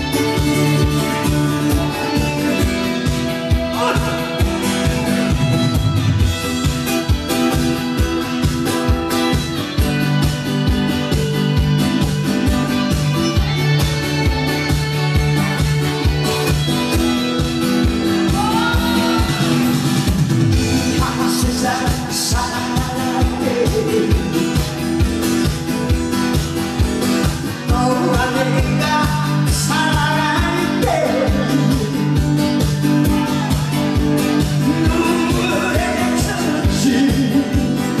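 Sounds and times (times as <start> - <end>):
person singing: 0.0 - 5.8, 18.0 - 19.9, 20.5 - 24.9, 27.4 - 38.0
live band music: 0.0 - 38.0.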